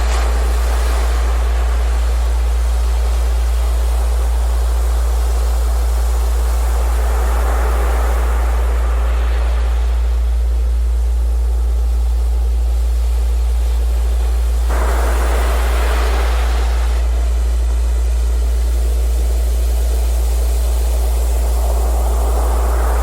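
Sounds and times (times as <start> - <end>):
waves washing in: 0.0 - 11.0, 14.7 - 18.6, 20.6 - 23.0
steady low tone: 0.0 - 23.0.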